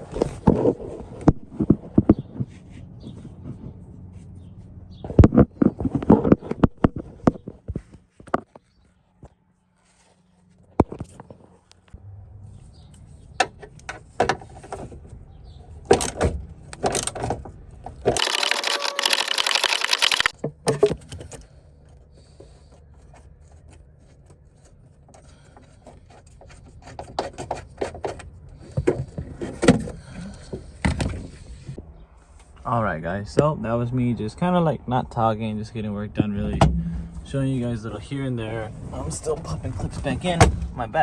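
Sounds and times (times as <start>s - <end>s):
fast dense rattling: 18.2s - 20.3s
hand tools clicking and scraping: 18.2s - 20.4s.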